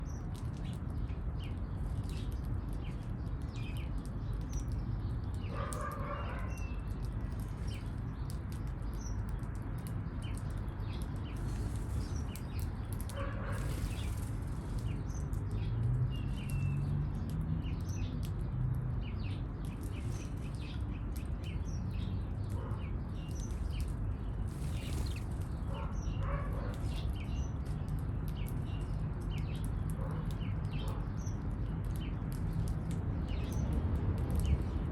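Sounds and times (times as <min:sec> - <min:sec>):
low city rumble: 0:00.0 - 0:34.9
birds chirping: 0:10.1 - 0:18.2, 0:19.0 - 0:32.2.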